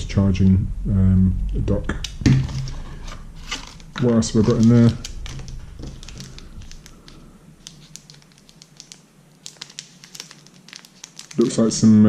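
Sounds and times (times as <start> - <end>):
faint low hum: 0.0 - 12.0
packaging clicks and rustles: 3.4 - 11.8.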